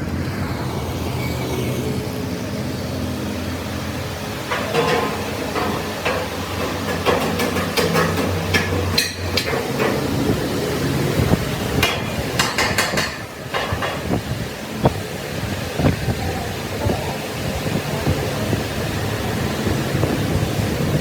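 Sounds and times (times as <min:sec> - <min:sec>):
hammer striking metal: 0:04.5 - 0:09.6, 0:11.8 - 0:14.0.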